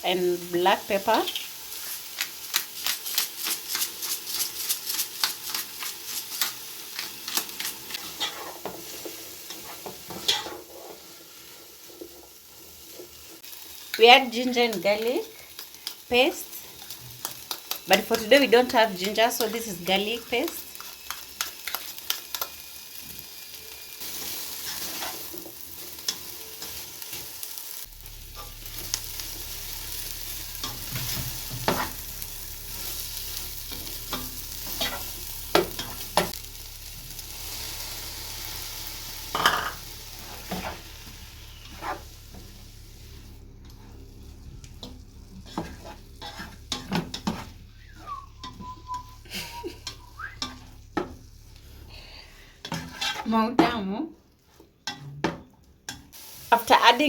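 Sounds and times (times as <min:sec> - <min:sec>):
paste sizzling in a pan: 0:00.0 - 0:53.4, 0:54.3 - 0:57.0
spoon knocking and scraping pan: 0:30.6 - 0:32.0, 0:34.1 - 0:36.4, 0:44.8 - 0:47.6, 0:50.4 - 0:51.2.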